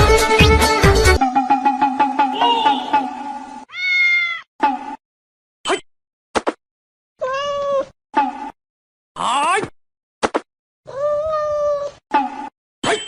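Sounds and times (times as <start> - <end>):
background music: 0.0 - 3.7
cat meowing: 3.7 - 4.5, 7.2 - 7.9, 10.9 - 12.0.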